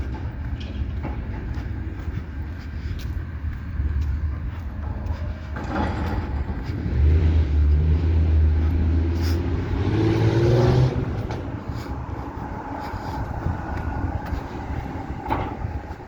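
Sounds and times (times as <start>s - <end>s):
diesel engine revving: 3.8s - 16.0s.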